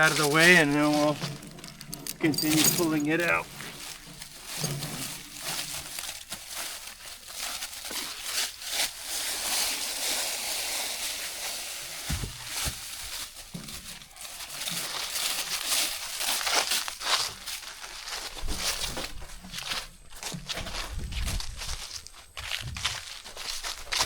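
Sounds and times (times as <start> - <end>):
branches and dry leaves rustling: 0.0 - 24.0
dull thump: 12.1 - 12.8.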